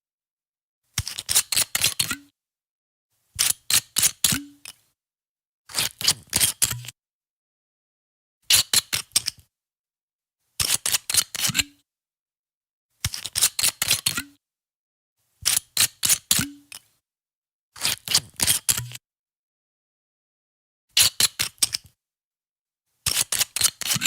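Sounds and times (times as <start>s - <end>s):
bottle screw cap clicking open: 3.4s - 4.8s, 6.1s - 6.9s, 16.1s - 16.8s, 18.2s - 19.0s.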